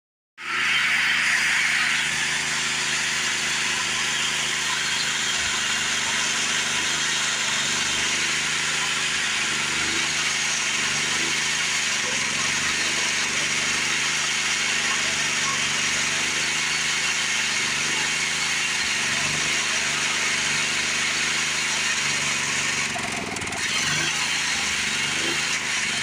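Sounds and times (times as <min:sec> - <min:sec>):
sawmill engine running: 0:00.4 - 0:26.0.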